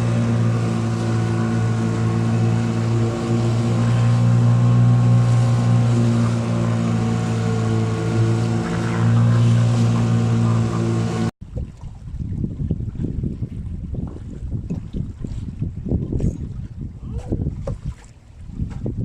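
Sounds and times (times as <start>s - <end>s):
motorboat engine running: 0.0s - 19.0s
wind buffeting microphone: 0.0s - 19.0s.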